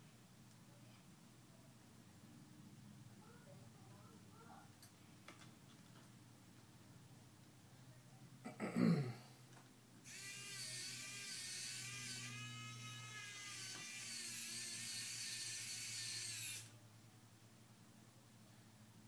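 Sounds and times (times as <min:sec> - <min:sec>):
small power tool motor whining: 0:10.0 - 0:16.8.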